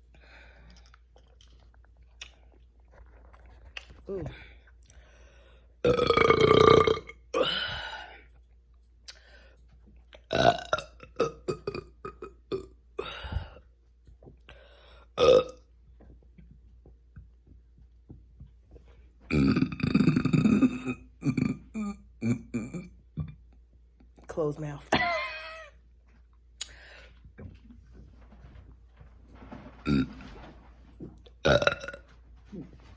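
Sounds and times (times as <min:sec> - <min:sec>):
person burping: 0:05.8 - 0:08.2, 0:10.2 - 0:13.6, 0:15.2 - 0:15.7, 0:19.3 - 0:23.4, 0:29.8 - 0:30.1, 0:31.4 - 0:32.6.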